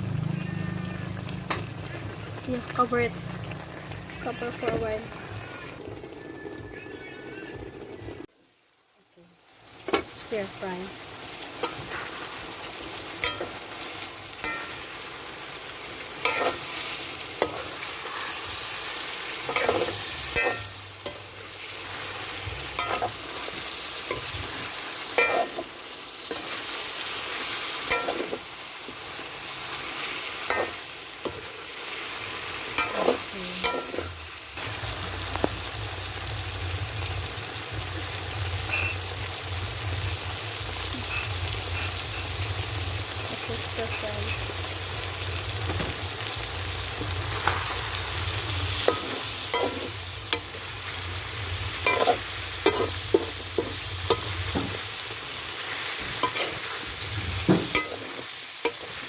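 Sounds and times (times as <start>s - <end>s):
food sizzling in a pan: 0.0s - 59.0s
utensil scraping a pan: 16.2s - 21.2s, 51.6s - 54.8s.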